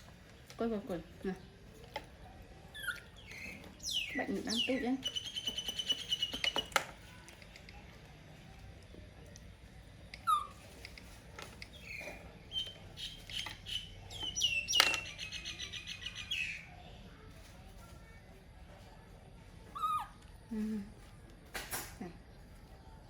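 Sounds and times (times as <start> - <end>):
monkey squeaky calls: 2.7 - 6.6, 10.2 - 10.7, 19.7 - 20.2
monkey stuttering squeal: 19.8 - 20.2.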